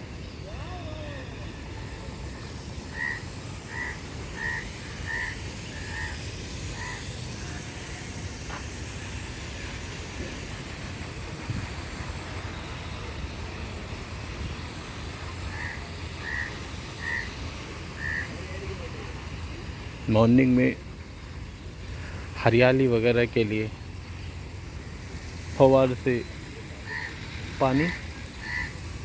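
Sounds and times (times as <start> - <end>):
bird calling: 0.2 - 8.2, 15.4 - 18.5, 26.1 - 29.0.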